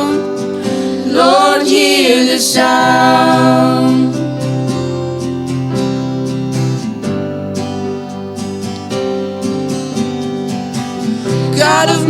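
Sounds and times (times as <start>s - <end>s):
acoustic guitar strumming: 0.0s - 12.0s.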